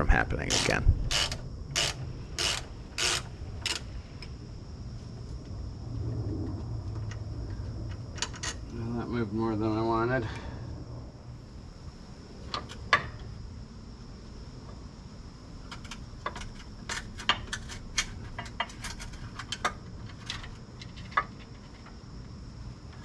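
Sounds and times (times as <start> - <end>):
steady low hum: 0.0 - 8.2.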